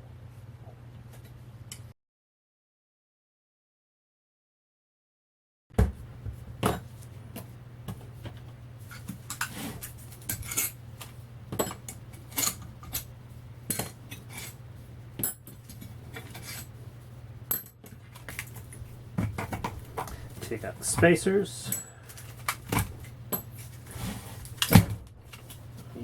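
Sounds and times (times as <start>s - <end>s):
steady low hum: 5.8s - 26.0s
tools clattering on metal: 10.1s - 10.8s, 11.5s - 13.1s, 15.2s - 16.7s, 17.5s - 23.8s.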